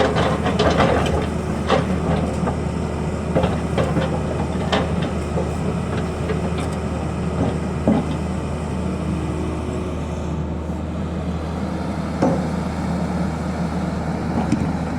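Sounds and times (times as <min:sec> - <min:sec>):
short knocks: 0:00.0 - 0:08.3
excavator diesel engine running: 0:00.0 - 0:14.9.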